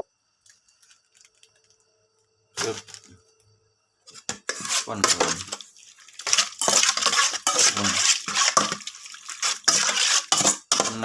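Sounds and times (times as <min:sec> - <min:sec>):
utensil scraping in a bowl: 0:04.1 - 0:11.0.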